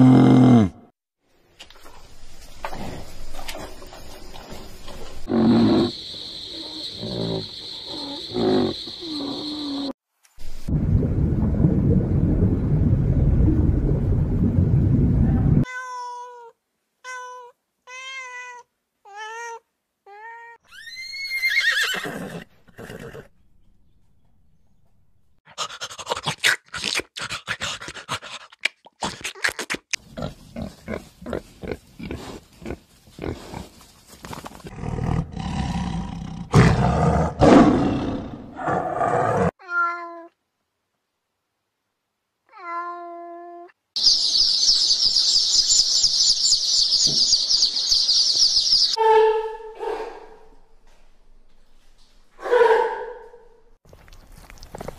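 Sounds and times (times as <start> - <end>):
animal roaring: 0.0 - 0.8, 34.7 - 39.5.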